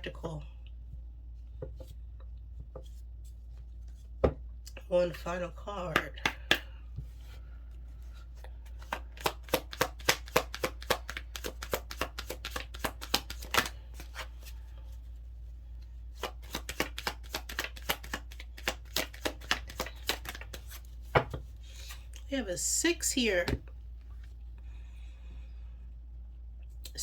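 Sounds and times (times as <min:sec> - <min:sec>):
cards being shuffled: 0:08.3 - 0:14.6, 0:16.1 - 0:22.1.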